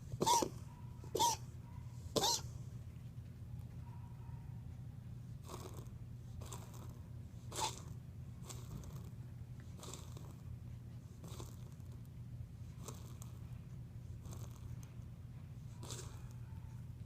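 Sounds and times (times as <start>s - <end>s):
animal wheezing: 0.2s - 0.6s, 7.5s - 9.0s, 9.8s - 10.3s, 15.8s - 16.2s.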